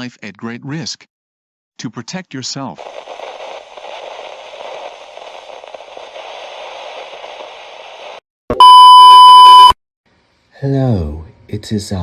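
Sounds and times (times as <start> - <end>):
broadcast static hissing: 2.8 - 8.2
distorted beep tone: 8.5 - 9.8.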